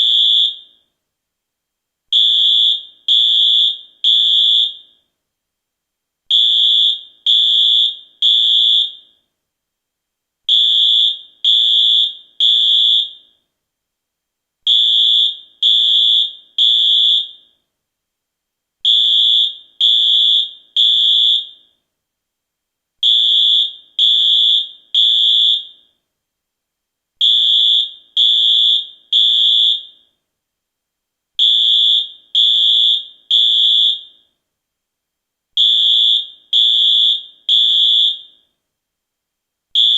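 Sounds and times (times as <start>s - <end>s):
fire alarm beeps: 0.0s - 0.9s, 2.2s - 5.1s, 6.3s - 9.2s, 10.5s - 13.4s, 14.7s - 17.6s, 18.9s - 21.8s, 23.0s - 26.0s, 27.2s - 30.2s, 31.4s - 34.4s, 35.6s - 38.6s.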